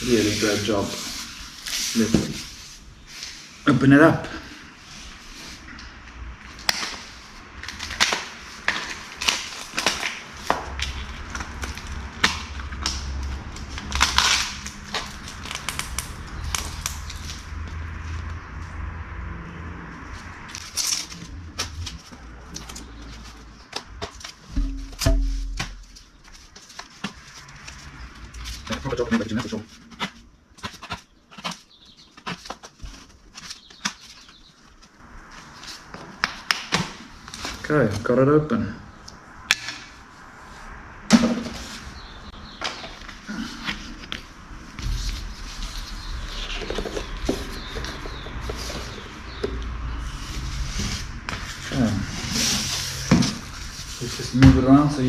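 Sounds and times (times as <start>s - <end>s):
packing material scraping and crinkling: 0.0s - 3.6s, 6.4s - 18.5s, 20.1s - 37.7s
packaging crackling and rustling: 6.4s - 18.4s.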